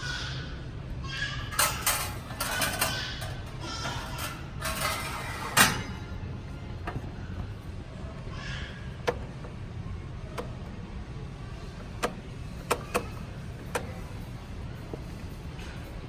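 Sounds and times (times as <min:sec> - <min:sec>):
toaster oven clicks and knocks: 0:01.0 - 0:16.0.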